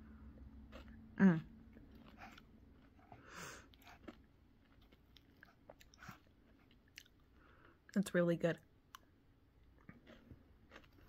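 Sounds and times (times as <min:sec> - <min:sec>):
wet chewing and crunching: 0:00.3 - 0:07.7, 0:08.8 - 0:11.0.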